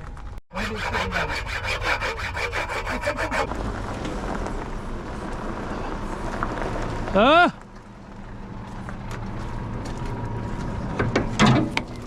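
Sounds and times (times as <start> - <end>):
fast rhythmic scraping: 0.5 - 3.5
low engine hum: 3.5 - 12.0.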